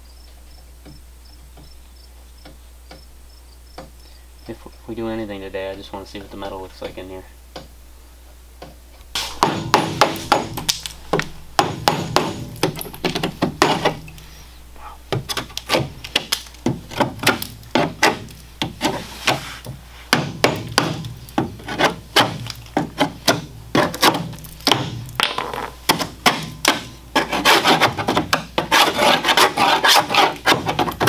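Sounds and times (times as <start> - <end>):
scraper scraping sheet metal: 16.9 - 19.7, 21.6 - 23.2, 27.1 - 31.0.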